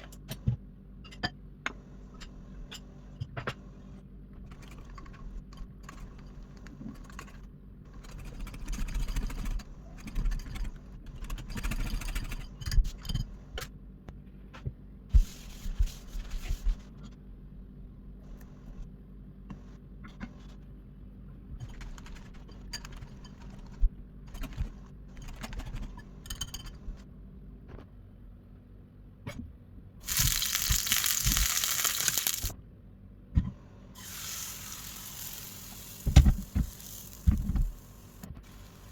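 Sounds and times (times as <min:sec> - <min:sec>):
faint steady hum: 0:12.6 - 0:38.9.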